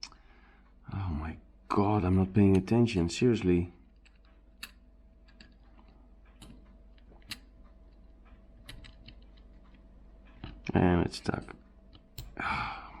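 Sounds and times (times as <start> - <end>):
small tools clicking and tapping: 4.0 - 10.7.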